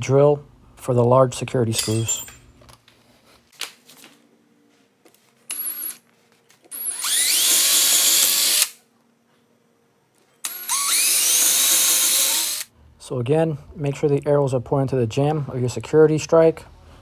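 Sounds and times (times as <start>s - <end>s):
power drill drilling into wood: 6.7s - 8.8s, 10.5s - 12.7s.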